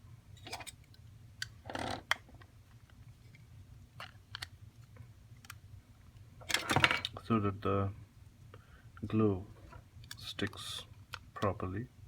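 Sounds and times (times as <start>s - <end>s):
plastic parts clicking and tapping: 4.0s - 4.5s.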